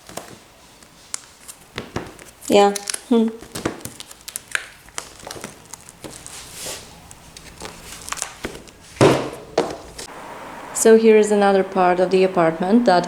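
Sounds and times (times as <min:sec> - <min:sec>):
light rustling: 0:00.0 - 0:10.1.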